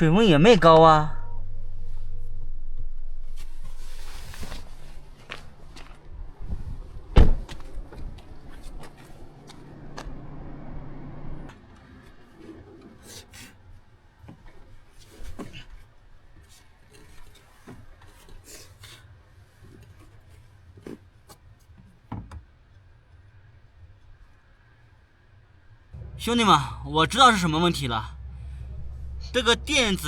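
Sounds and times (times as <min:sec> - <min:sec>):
steady hum: 0:00.0 - 0:05.6, 0:26.0 - 0:30.0.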